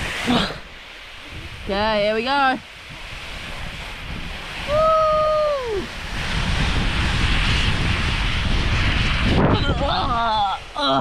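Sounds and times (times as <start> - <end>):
wind rushing over microphone: 0.0 - 11.0
person whooping: 4.7 - 5.9.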